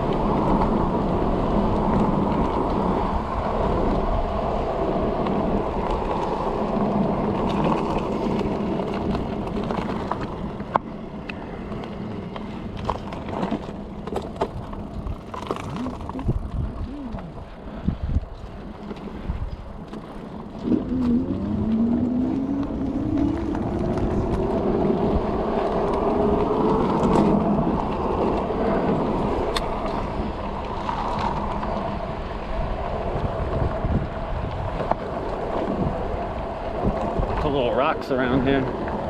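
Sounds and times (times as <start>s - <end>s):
road noise: 0.0s - 39.0s
wind: 0.0s - 39.0s
e-bike motor whining: 14.9s - 37.4s.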